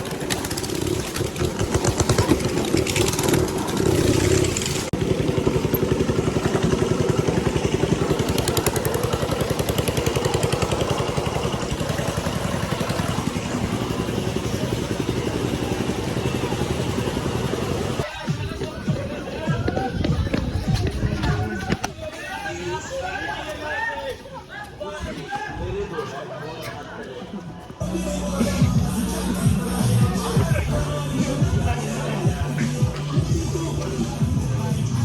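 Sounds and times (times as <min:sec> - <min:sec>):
small engine running: 0:00.0 - 0:18.1.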